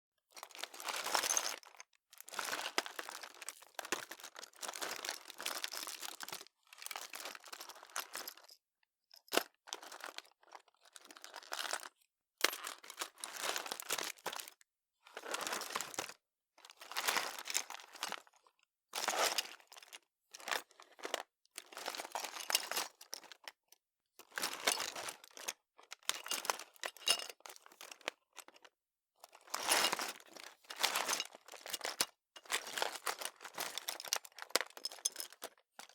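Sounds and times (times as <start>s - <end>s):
rummaging through a drawer: 24.3s - 28.0s, 29.3s - 35.6s.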